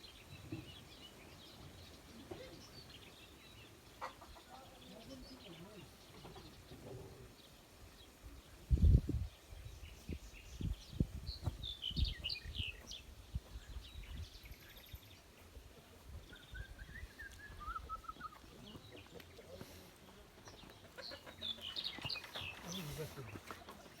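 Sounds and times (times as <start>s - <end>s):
small birds chirping: 0.0s - 24.0s
dull low thumps: 10.5s - 12.3s.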